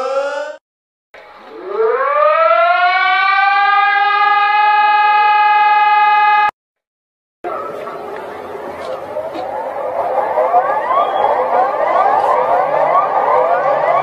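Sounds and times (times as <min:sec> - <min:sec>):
warning siren winding up: 0:01.2 - 0:06.5, 0:09.4 - 0:14.0.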